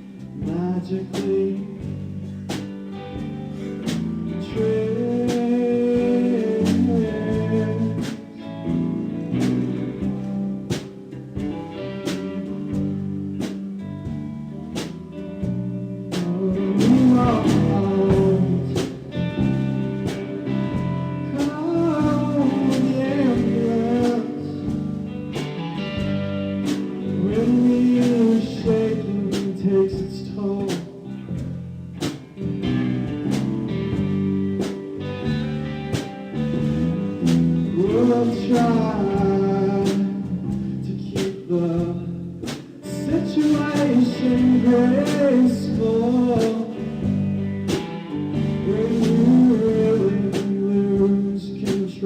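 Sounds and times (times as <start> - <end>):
electric guitars playing: 0.0 - 52.0
drum beat: 14.8 - 50.6.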